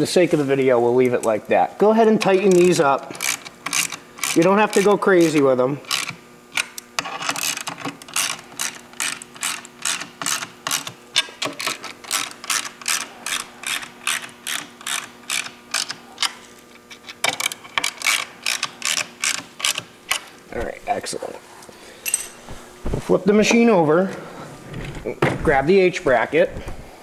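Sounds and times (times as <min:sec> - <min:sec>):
ratchet wrench clicking: 0:02.3 - 0:06.1, 0:12.1 - 0:16.3, 0:17.4 - 0:19.9.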